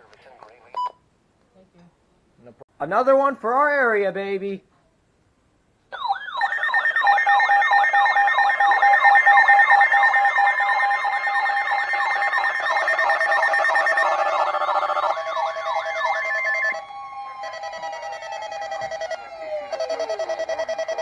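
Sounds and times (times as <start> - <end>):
pulsing phone alert tone: 6.0 - 21.0.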